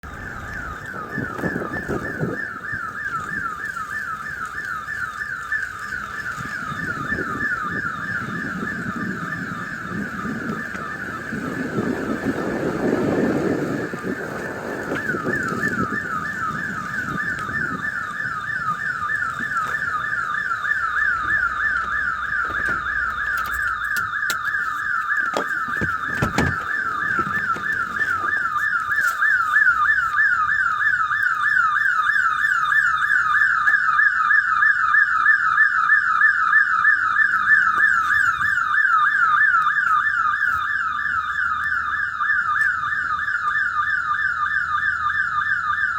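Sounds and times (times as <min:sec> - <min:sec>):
store alarm electronic warble: 0:00.0 - 0:45.9.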